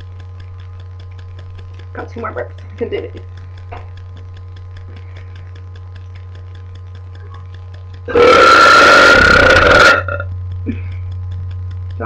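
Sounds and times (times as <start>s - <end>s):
low electrical hum: 0.0s - 12.0s
long loud burp: 8.1s - 10.3s.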